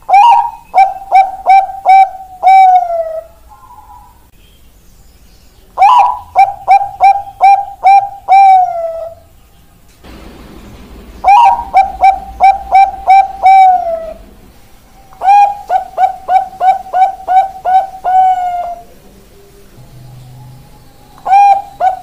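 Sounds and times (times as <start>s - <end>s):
dove cooing: 0.0s - 4.3s, 5.8s - 9.3s, 11.2s - 14.4s, 15.0s - 19.1s, 20.0s - 22.0s.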